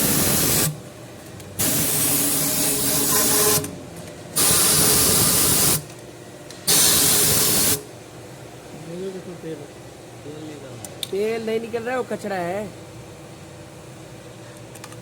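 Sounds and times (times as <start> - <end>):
compressed air hissing blasts: 0.0 - 0.8, 1.6 - 3.7, 4.4 - 5.8, 6.7 - 7.8.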